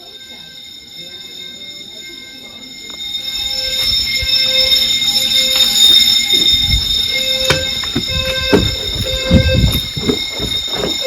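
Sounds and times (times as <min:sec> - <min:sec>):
fire alarm bell ringing: 0:00.0 - 0:11.0
low thumps: 0:07.5 - 0:11.0.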